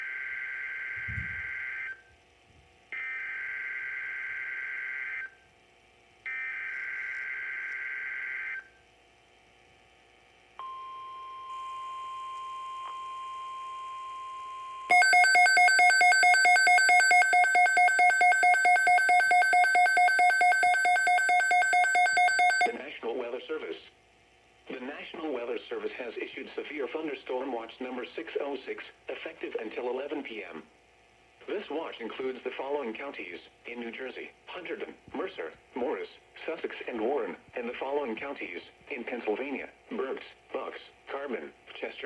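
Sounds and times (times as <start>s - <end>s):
steady radio warning tone: 11.6s - 23.0s
rapidly pulsing electronic beep: 14.9s - 22.8s.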